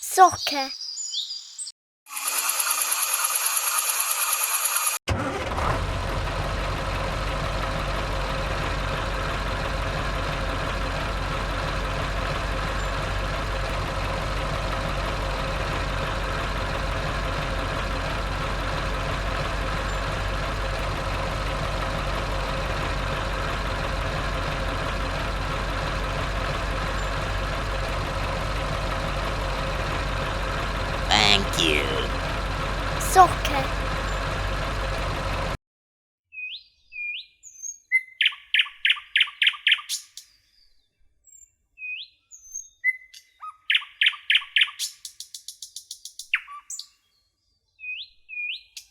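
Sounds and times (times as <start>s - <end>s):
engine idling drone: 5.3s - 31.2s.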